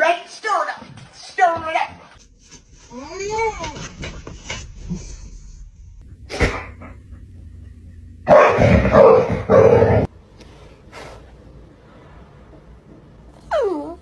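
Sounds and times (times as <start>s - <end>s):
dog barking: 8.2s - 10.1s.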